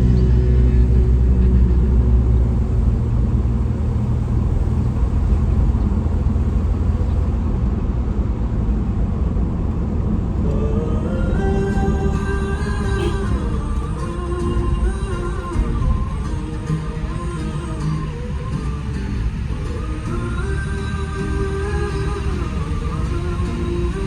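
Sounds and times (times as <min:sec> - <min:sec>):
music: 0:00.0 - 0:02.7, 0:10.4 - 0:24.0
vehicle engine and tyres rumbling: 0:00.0 - 0:24.0.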